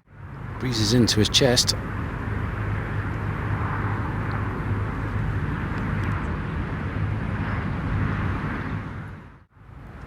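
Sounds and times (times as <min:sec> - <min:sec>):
wind blowing across microphone: 0:01.8 - 0:10.0.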